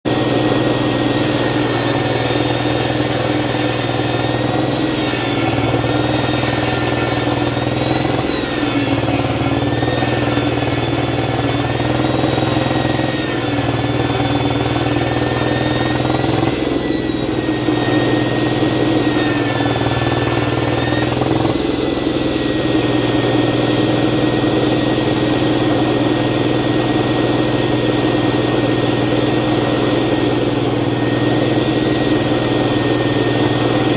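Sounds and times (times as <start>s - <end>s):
circular saw whining: 0.1s - 33.9s
saw cutting wood hiss: 1.1s - 17.6s, 19.0s - 21.5s.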